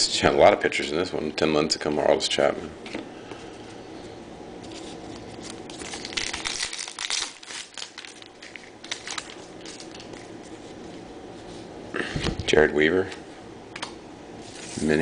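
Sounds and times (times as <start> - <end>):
wrapper crinkling: 4.7 - 10.8.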